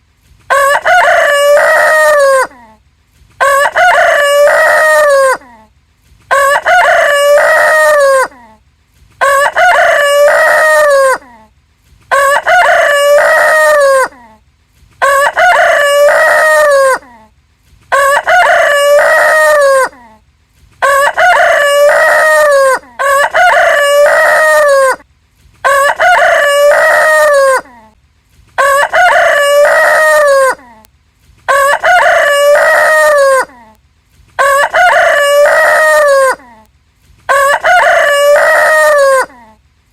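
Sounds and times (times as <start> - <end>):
rooster crowing: 0.5 - 2.6, 3.4 - 5.5, 6.3 - 8.4, 9.2 - 11.4, 12.1 - 14.2, 15.0 - 17.1, 17.9 - 20.0, 20.8 - 25.0, 25.6 - 27.7, 28.6 - 30.6, 31.5 - 33.6, 34.4 - 36.5, 37.3 - 39.5.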